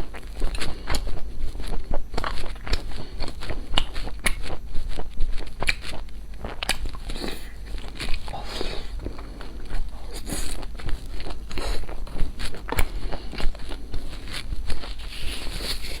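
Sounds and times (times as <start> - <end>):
crunchy bites and chewing: 0.0 - 16.0.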